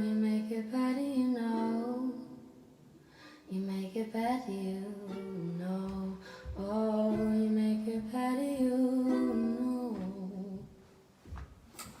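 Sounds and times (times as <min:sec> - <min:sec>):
plucked strings: 0:04.3 - 0:10.6.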